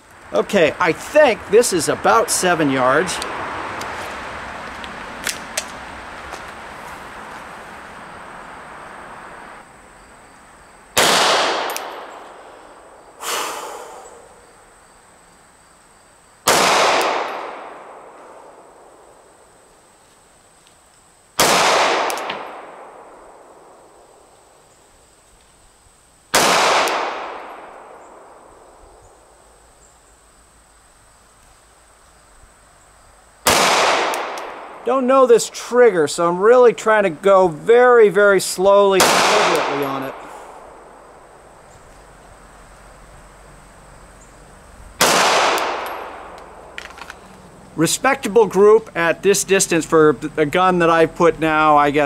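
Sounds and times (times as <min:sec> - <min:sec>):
pistol shots with echo: 0:11.0 - 0:12.4, 0:16.4 - 0:18.2, 0:21.4 - 0:23.7, 0:26.3 - 0:28.5, 0:33.4 - 0:34.8, 0:39.0 - 0:40.6, 0:45.0 - 0:46.4
quieter bang: 0:45.0 - 0:47.0.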